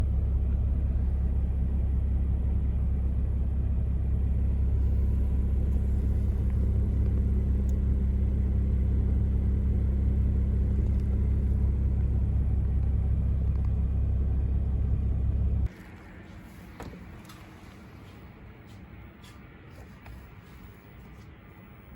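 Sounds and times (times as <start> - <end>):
car engine rumbling: 0.0 - 19.7.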